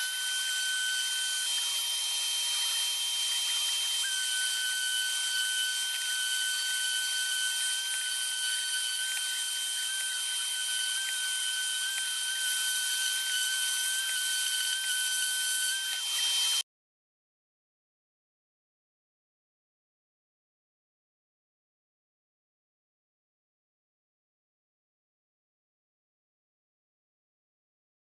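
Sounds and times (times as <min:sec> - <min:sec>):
power tool motor whining: 0:00.0 - 0:16.6.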